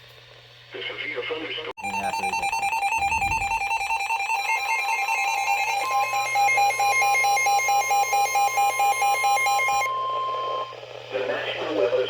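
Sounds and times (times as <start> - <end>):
electronic alert beeping: 1.8 - 10.7
steady warning alarm tone: 1.8 - 10.8.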